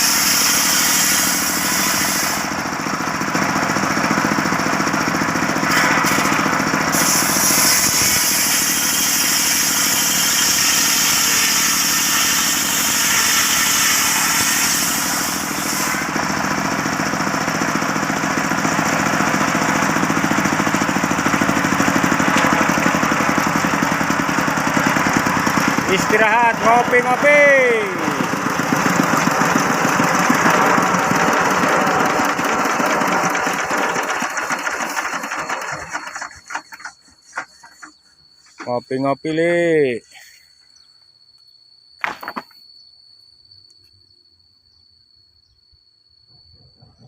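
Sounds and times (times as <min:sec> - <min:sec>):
saw blade hissing in wood: 0:00.0 - 0:02.6, 0:05.6 - 0:16.2
circular sawmill running: 0:00.0 - 0:39.3.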